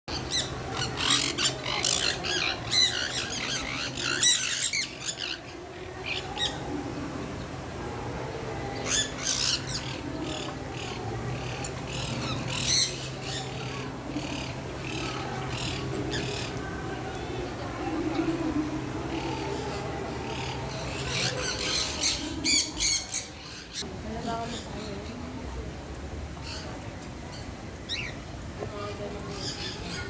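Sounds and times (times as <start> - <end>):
birds squawking: 0.1 - 6.7, 8.8 - 16.8, 19.0 - 23.8.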